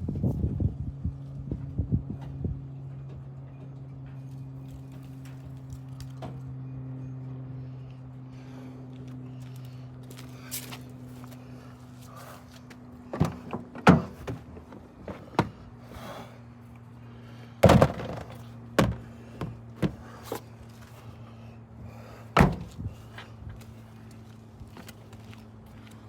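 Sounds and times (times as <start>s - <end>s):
steady low hum: 0.0s - 26.0s
irregular knocks and thuds: 13.1s - 15.6s, 17.6s - 20.2s, 22.4s - 22.8s.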